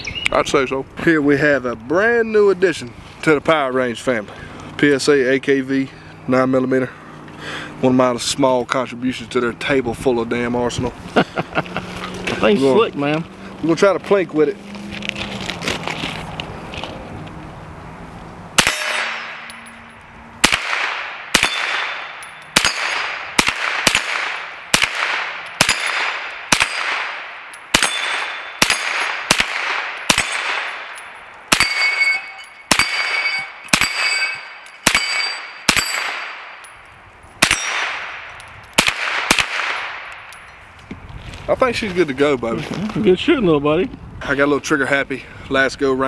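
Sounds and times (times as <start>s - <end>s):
gunshots: 18.6s - 19.5s, 20.4s - 36.6s, 37.4s - 40.1s
short metallic ring: 18.6s - 20.2s, 21.4s - 23.2s, 30.1s - 38.6s.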